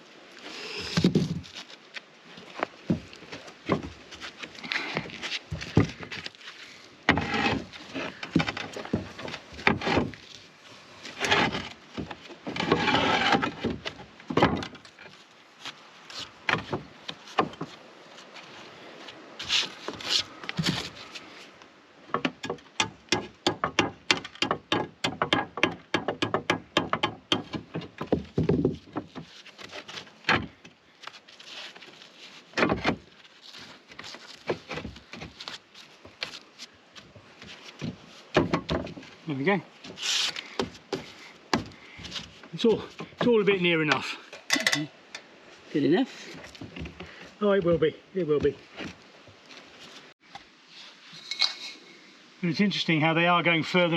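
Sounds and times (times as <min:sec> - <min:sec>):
roof tiles knocking together: 0:23.5 - 0:29.1.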